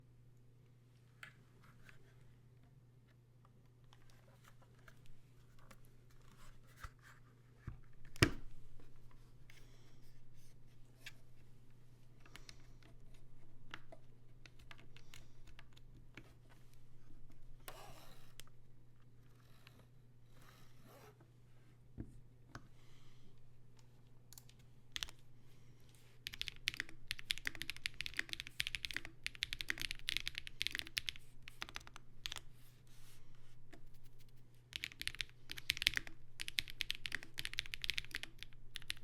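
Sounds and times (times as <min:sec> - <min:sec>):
mechanical keyboard typing: 0:25.0 - 0:25.2, 0:26.2 - 0:32.4, 0:34.7 - 0:39.0.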